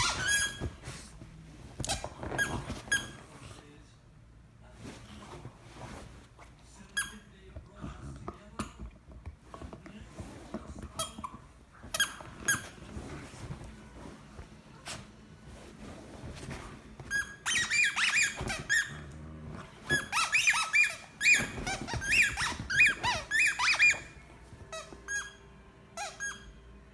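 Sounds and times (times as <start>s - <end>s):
high-pitched squeaks: 19.9s - 25.4s.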